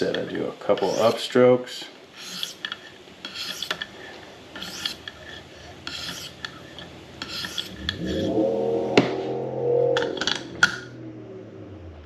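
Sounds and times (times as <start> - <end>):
sharpening stone rasping on blade: 0.8 - 1.2, 2.2 - 3.9, 4.6 - 7.8.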